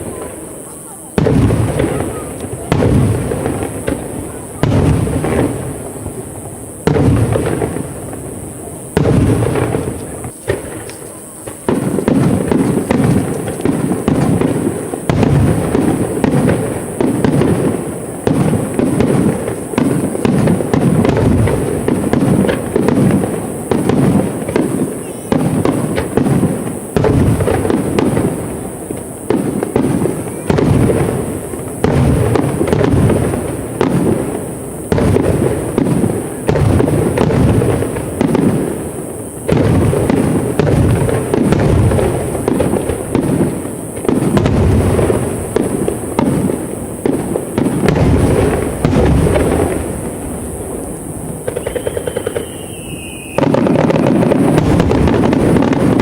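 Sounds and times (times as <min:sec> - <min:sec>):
fireworks bursting: 0:00.0 - 0:56.0.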